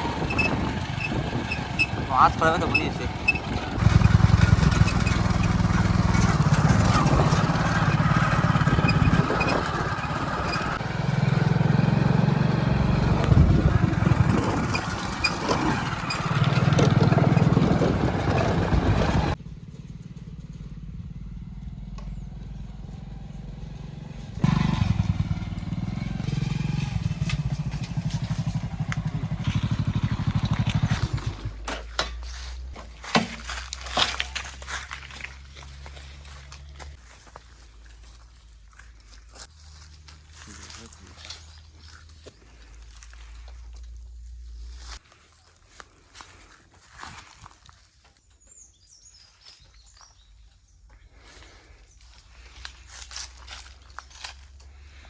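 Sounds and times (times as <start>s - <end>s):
diesel engine revving: 0.0s - 19.4s, 20.8s - 31.7s.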